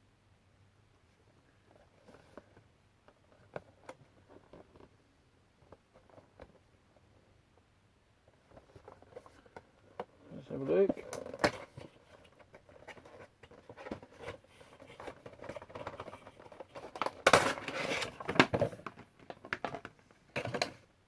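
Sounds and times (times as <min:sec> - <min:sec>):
packaging rustling and crinkling: 0:08.5 - 0:20.7.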